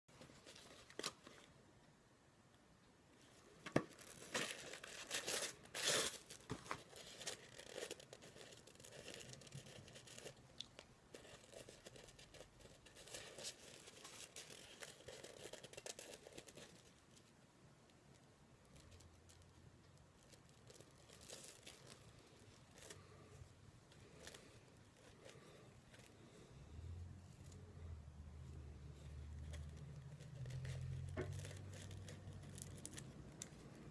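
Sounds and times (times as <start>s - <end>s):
paper rustling and tearing: 3.8s - 10.4s, 28.9s - 33.9s.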